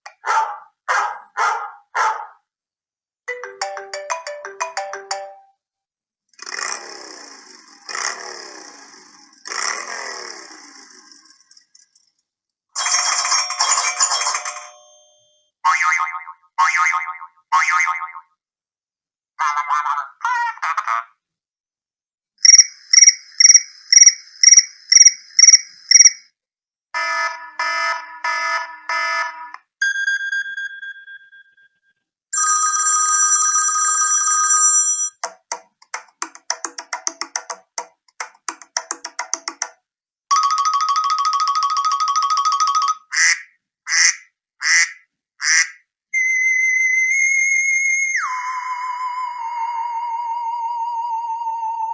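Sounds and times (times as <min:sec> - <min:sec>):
chiming ringtone: 0:03.3 - 0:05.6, 0:12.8 - 0:15.4, 0:32.4 - 0:35.2, 0:40.3 - 0:43.0
quick electronic beeps: 0:22.4 - 0:26.3
rapid chirping trill: 0:22.4 - 0:26.3.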